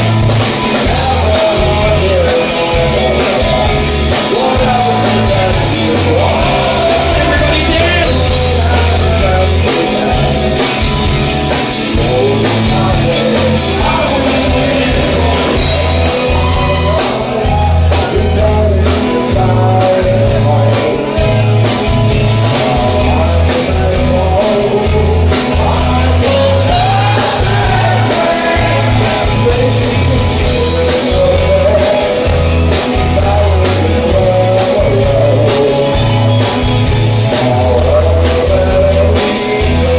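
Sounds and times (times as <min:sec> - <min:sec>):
bass line: 0:00.0 - 0:39.9
person singing: 0:00.0 - 0:39.9
rock band playing: 0:00.0 - 0:39.9.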